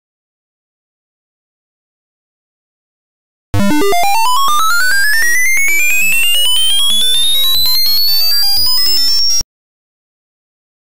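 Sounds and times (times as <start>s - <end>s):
buzzy electronic tone rising: 3.6s - 9.4s
jumble of electronic tones: 3.6s - 9.4s.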